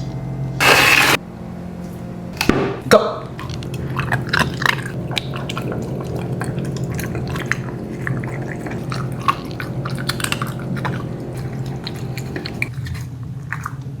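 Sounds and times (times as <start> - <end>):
steady low hum: 0.0 - 13.4
dogs lapping and chewing food: 3.2 - 14.0.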